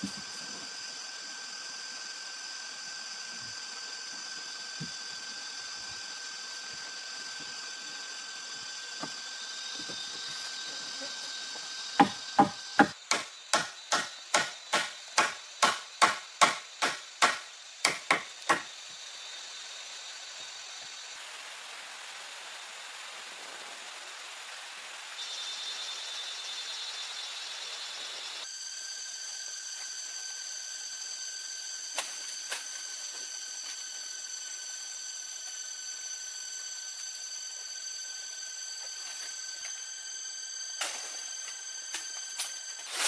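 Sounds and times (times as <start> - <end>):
chopping strikes on wood: 12.0 - 18.7.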